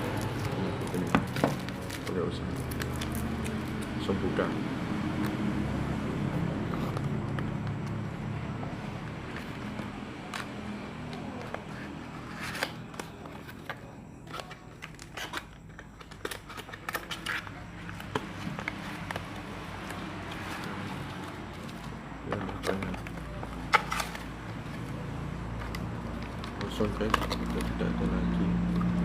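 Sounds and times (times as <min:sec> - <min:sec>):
packaging crackling and rustling: 0:00.0 - 0:03.9, 0:09.2 - 0:27.9.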